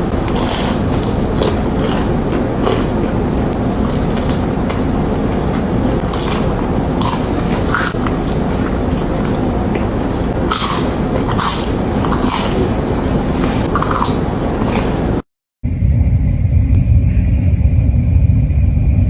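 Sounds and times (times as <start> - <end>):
crunchy biting and chewing: 0.0 - 15.2
steady low rumble: 0.0 - 19.0.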